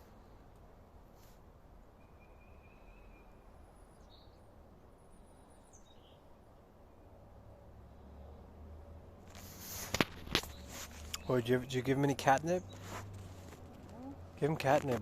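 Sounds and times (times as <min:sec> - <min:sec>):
faint high whistle-like tones: 0:01.9 - 0:04.0.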